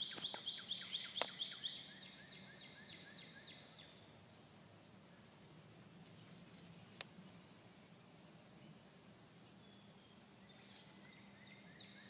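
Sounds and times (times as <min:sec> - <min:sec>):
bird calling: 0:00.0 - 0:04.1, 0:09.5 - 0:12.0.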